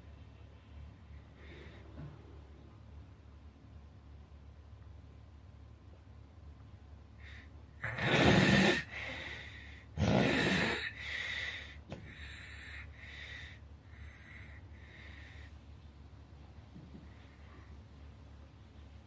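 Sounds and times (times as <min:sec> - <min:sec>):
person snoring: 0:07.8 - 0:11.3.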